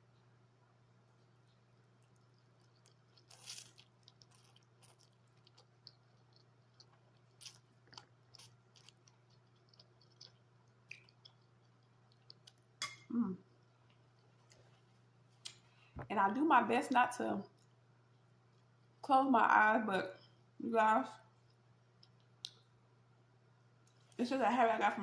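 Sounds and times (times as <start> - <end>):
person chewing wetly: 1.0 - 15.6, 21.3 - 22.8.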